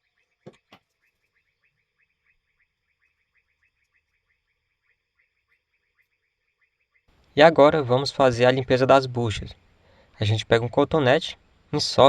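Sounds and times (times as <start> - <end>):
faint rapid chirping: 0.0 - 7.5.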